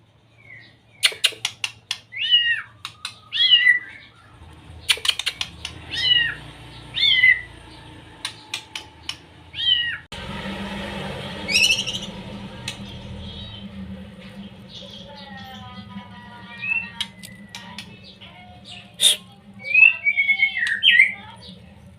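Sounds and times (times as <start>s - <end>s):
bird clicking notes: 1.0s - 2.1s, 4.9s - 5.9s, 8.2s - 9.4s
bird mewing calls: 1.0s - 10.1s, 11.3s - 21.7s
bird rising notes: 3.3s - 15.0s.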